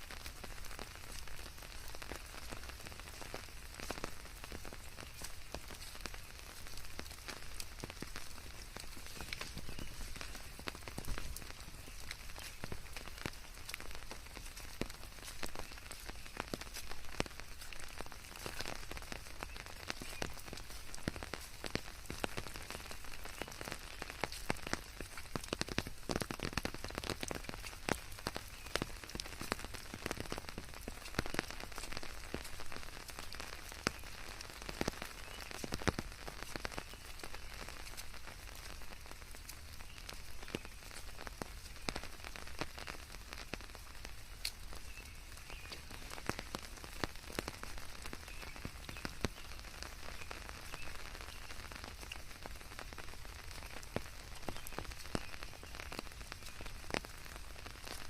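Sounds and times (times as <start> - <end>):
rain falling: 0.0 - 58.0
raindrops pattering on hard surface: 0.0 - 58.0.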